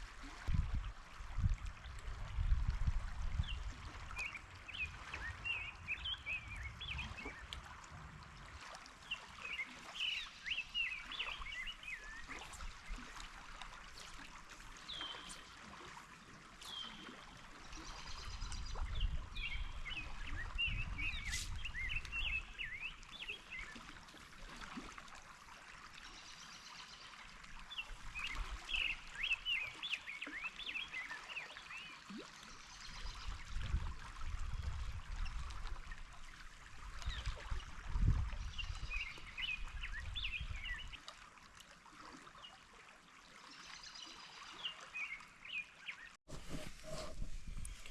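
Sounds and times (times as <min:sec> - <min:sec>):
river water running: 0:00.0 - 0:47.9
songbirds chirping: 0:09.1 - 0:24.0, 0:43.5 - 0:47.9.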